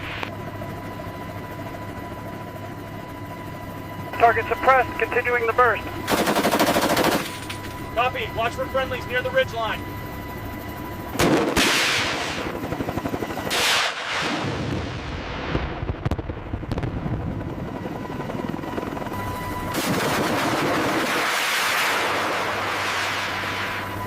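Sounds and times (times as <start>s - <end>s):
gatling gun firing bursts: 6.1s - 7.4s, 11.2s - 12.4s, 19.7s - 21.2s.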